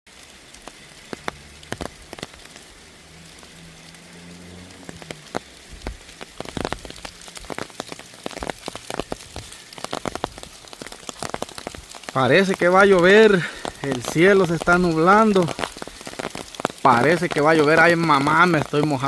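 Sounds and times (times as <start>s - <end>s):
rain falling: 0.1s - 19.0s
large drops tapping: 4.9s - 19.0s.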